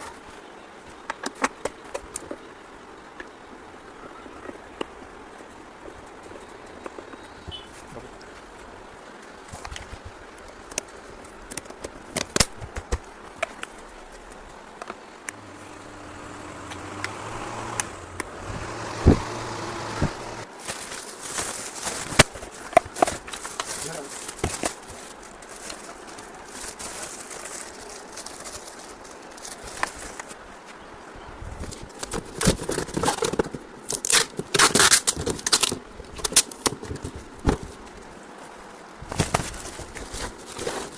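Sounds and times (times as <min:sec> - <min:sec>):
handling noises: 0:15.3 - 0:30.3
scraping and rustling: 0:15.3 - 0:30.4, 0:39.1 - 0:40.9.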